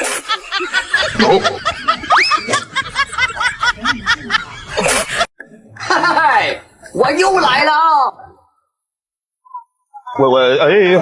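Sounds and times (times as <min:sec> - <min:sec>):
person snickering and chuckling: 0:00.0 - 0:06.0.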